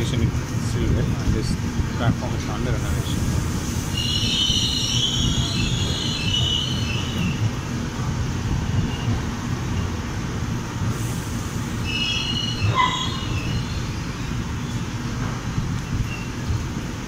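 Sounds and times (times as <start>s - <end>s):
train wheels rumbling on track: 0.0s - 17.0s
high-pitched wheel squeal: 3.9s - 7.4s, 11.8s - 13.8s.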